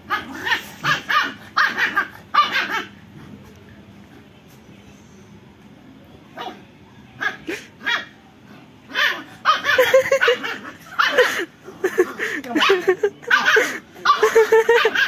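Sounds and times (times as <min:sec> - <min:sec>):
dog barking: 0:00.1 - 0:03.0, 0:06.4 - 0:06.6, 0:08.9 - 0:11.4, 0:12.6 - 0:15.0.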